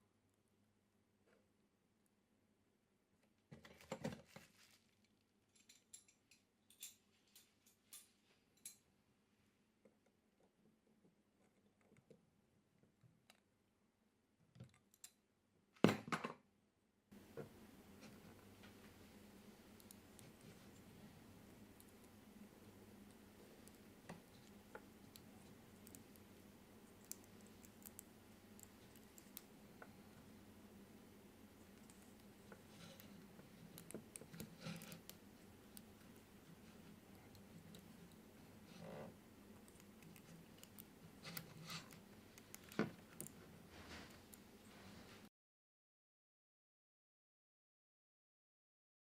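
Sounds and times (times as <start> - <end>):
low steady hum: 17.1 - 45.3.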